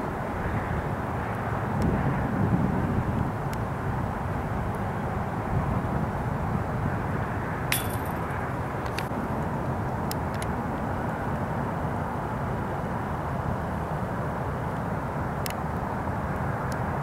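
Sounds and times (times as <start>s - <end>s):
metallic clink: 7.7s - 8.4s.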